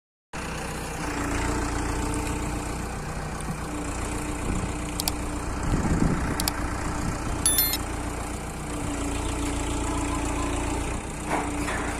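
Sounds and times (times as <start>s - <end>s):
diesel engine running: 0.4s - 11.9s
sharp clicks: 5.0s - 5.2s, 6.4s - 6.6s.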